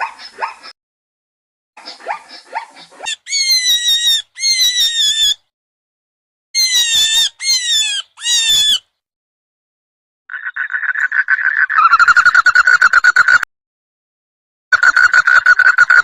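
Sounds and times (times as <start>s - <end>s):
animal squealing: 2.8s - 5.4s, 6.6s - 8.8s.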